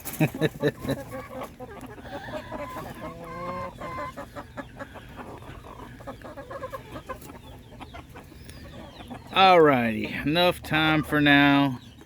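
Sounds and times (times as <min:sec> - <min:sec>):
chicken short calls: 0:00.0 - 0:09.3
chickens clucking: 0:00.0 - 0:12.0.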